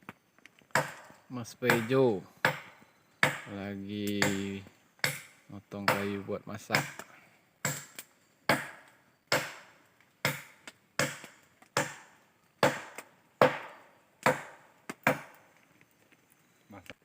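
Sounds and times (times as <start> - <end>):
blade chopping wood: 0.7 - 1.1, 1.7 - 3.5, 4.1 - 15.4.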